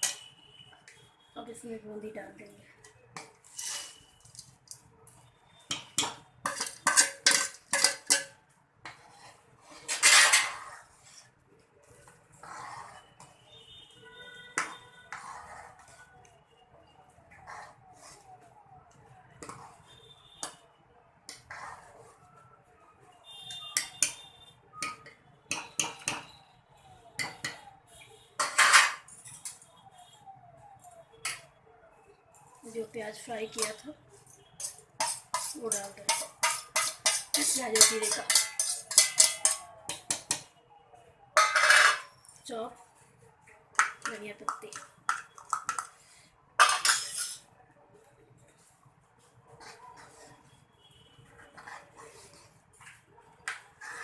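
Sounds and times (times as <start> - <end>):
spoon scraping pot: 0.0 - 0.3, 3.2 - 4.8, 5.7 - 11.3, 12.0 - 13.4, 14.6 - 15.9, 19.4 - 19.8, 21.3 - 22.2, 28.4 - 29.6, 34.6 - 40.4, 41.4 - 42.1, 43.8 - 47.5, 49.6 - 50.4, 51.3 - 54.0
spoon scraping rattle: 3.4 - 4.5, 34.6 - 39.6, 46.6 - 47.4
metal spoon clinking on pot: 5.7 - 8.4, 23.5 - 24.2, 24.8 - 26.2, 28.4 - 29.6, 34.6 - 40.5, 41.4 - 42.1, 46.6 - 47.4.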